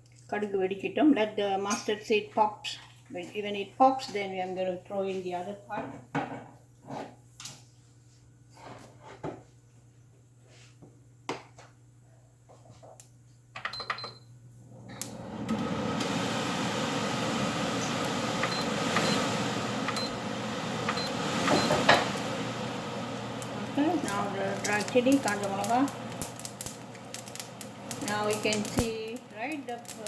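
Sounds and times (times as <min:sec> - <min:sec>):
oil sizzling: 0:14.7 - 0:30.0
mustard seeds popping: 0:23.4 - 0:30.0.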